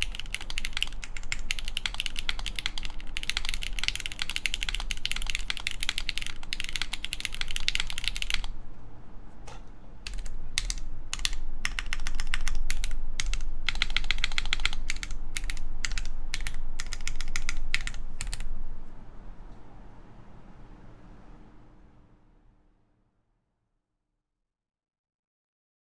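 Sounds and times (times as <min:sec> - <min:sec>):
mechanical keyboard typing: 0:00.0 - 0:08.6, 0:10.0 - 0:18.5.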